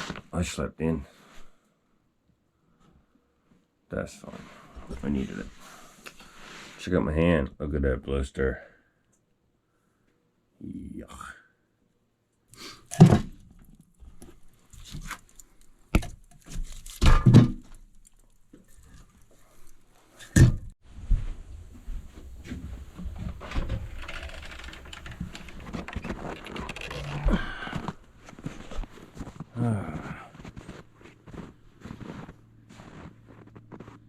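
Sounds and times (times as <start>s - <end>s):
rustling: 12.6s - 29.5s.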